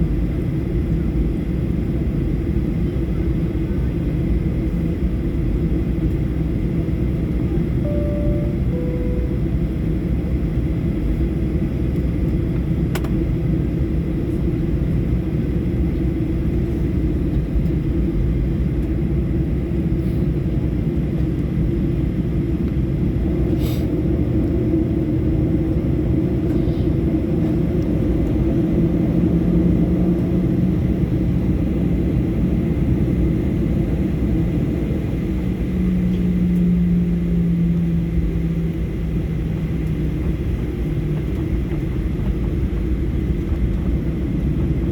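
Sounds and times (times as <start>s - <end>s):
jet engines rumbling: 0.0s - 44.9s
low steady hum: 4.9s - 13.1s.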